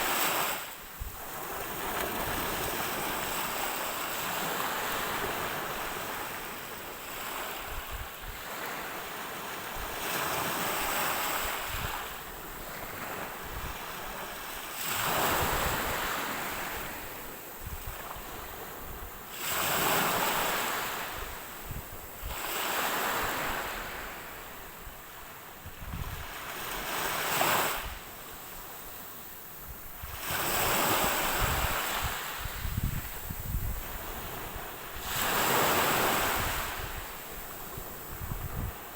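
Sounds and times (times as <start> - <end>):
ocean waves breaking: 33.8 - 38.9.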